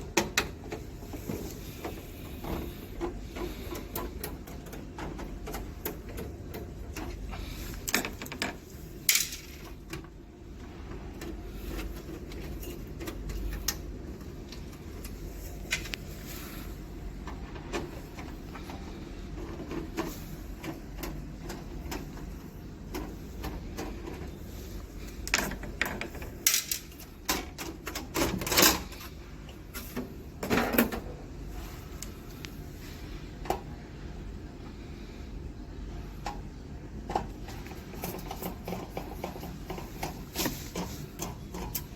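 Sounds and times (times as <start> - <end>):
tools and parts clicking: 3.8 - 10.1, 25.2 - 29.0.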